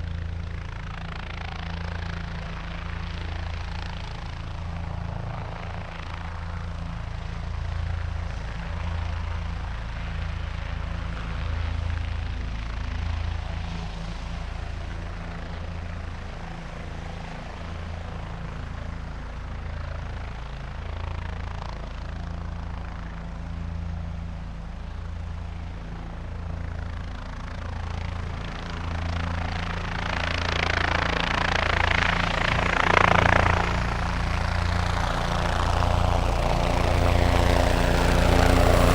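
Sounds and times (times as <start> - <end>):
helicopter rotor blades beating: 0.0 - 38.9
rush of noise: 31.3 - 38.9.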